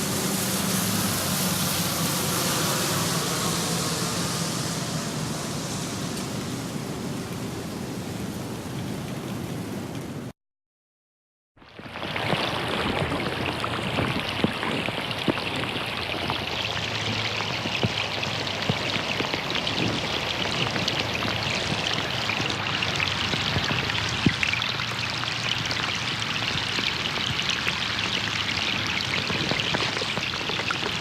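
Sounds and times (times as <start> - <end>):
heavy rain: 0.0 - 10.3, 11.8 - 31.0
raindrops ticking: 11.8 - 31.0.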